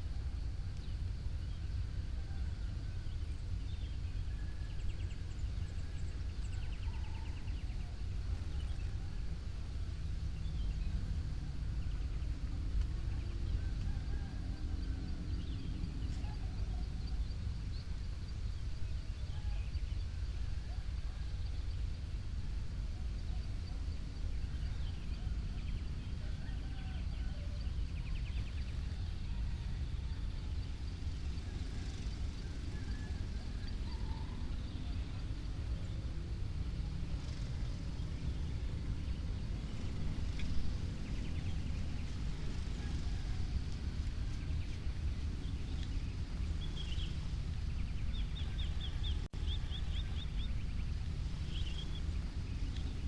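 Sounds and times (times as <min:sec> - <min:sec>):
steady low rumble: 0:37.5 - 0:53.0.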